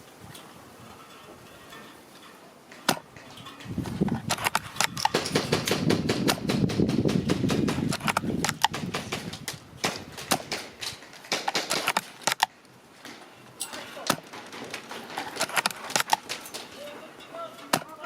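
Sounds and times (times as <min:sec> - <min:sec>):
sharp clicks and rattles: 0:00.0 - 0:18.0
wind buffeting microphone: 0:03.0 - 0:11.3.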